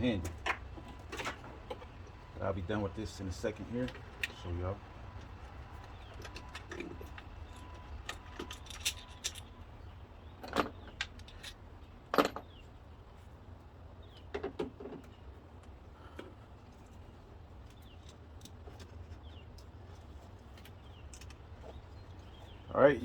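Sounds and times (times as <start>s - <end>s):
metal tools clinking: 5.9s - 9.6s, 10.4s - 12.5s.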